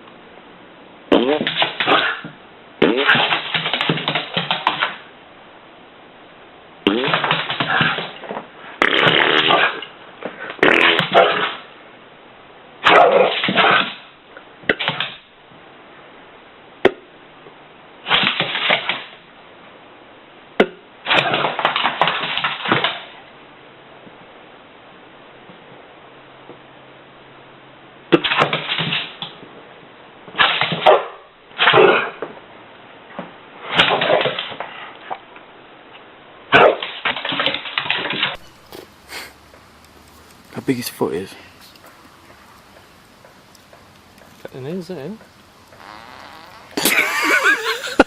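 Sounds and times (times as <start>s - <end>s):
animal farting: 1.1s - 2.1s, 6.8s - 8.1s, 8.8s - 9.9s, 10.6s - 11.6s, 45.6s - 48.0s.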